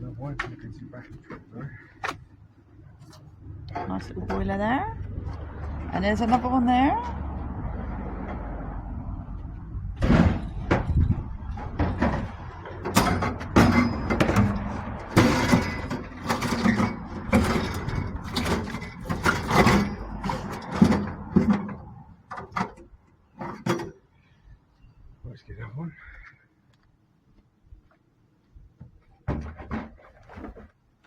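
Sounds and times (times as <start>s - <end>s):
scrap metal bangs and clatter: 10.0s - 24.0s.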